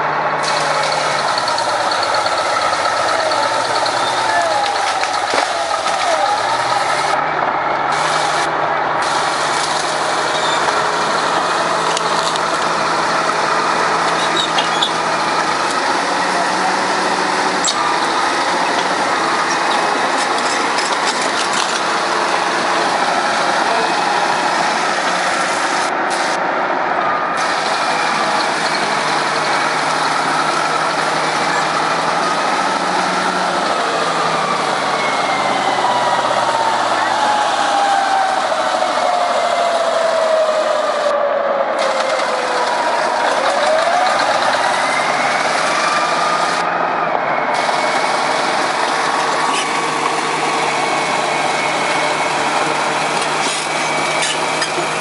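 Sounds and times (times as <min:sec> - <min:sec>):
construction machinery engine drone: 0:00.0 - 0:55.0
high squeaking tones: 0:14.0 - 0:15.1.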